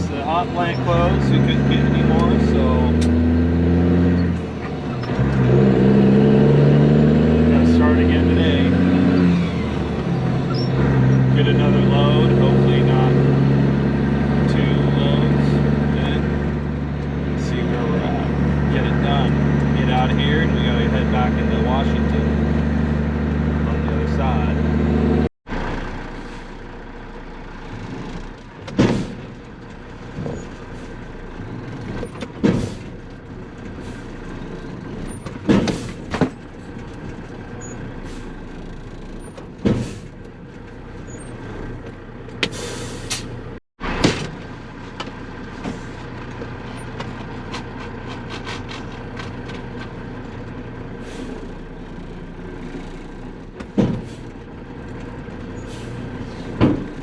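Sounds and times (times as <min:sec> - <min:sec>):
dump truck engine running: 0:00.0 - 0:57.0
loud clunks and rattles: 0:27.7 - 0:44.6, 0:52.3 - 0:57.0.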